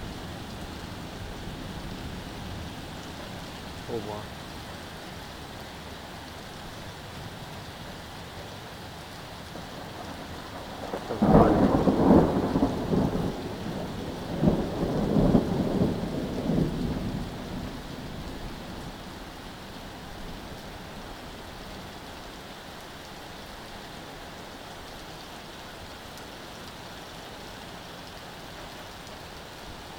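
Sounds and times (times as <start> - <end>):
steady rain: 0.0 - 29.9
thunder crack and rumble: 9.6 - 19.0.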